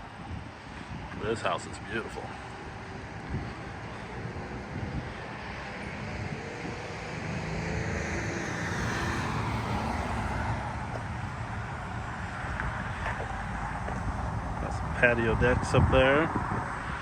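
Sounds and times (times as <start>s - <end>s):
car passing by: 3.7s - 13.8s.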